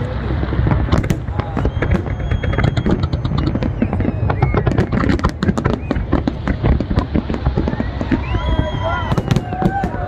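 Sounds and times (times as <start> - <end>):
firecrackers cracking: 0.0 - 10.0
low rumble: 0.0 - 10.0
faint whistling tones: 1.4 - 6.1, 7.6 - 9.4.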